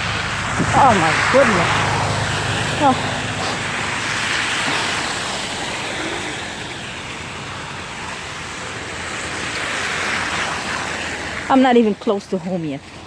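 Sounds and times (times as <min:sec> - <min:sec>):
traffic on a wet road: 0:00.0 - 0:13.0.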